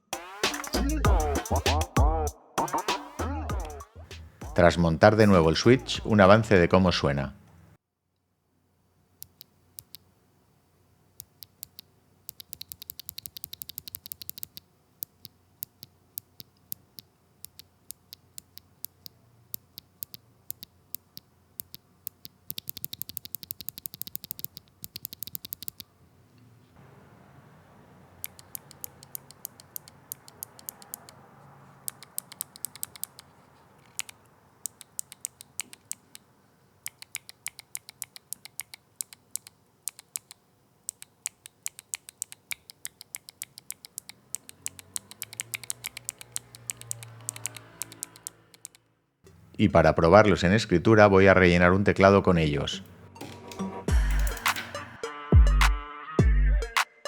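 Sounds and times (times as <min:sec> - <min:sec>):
clicky keyboard switch clicking: 0:28.2 - 0:31.2.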